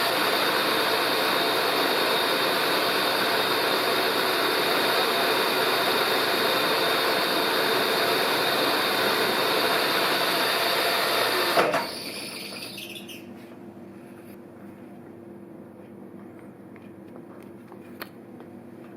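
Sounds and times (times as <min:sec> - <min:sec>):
milling machine running: 0:00.0 - 0:13.0.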